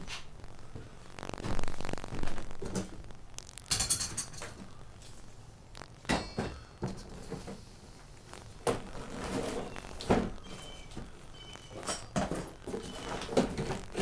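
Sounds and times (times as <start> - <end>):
metal objects clinking: 3.7 - 4.5.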